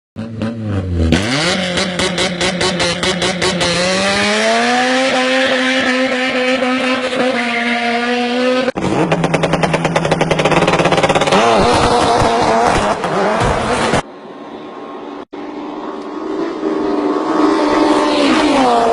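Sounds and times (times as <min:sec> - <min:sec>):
vehicle engine revving: 0:00.2 - 0:14.0, 0:15.4 - 0:18.9
engine with fast even firing: 0:08.0 - 0:14.0.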